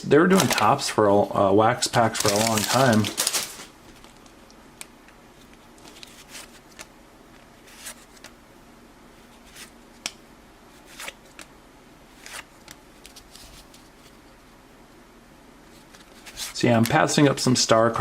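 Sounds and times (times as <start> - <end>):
cards being flipped through: 0.3 - 0.8, 2.0 - 4.3, 5.5 - 6.9, 7.6 - 8.4, 10.8 - 11.5, 12.2 - 13.9.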